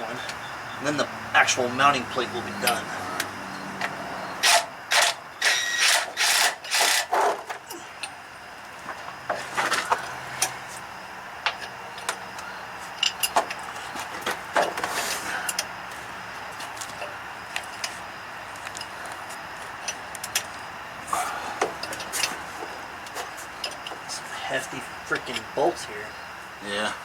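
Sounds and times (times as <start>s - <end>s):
ratchet rasping strokes: 4.4s - 7.1s.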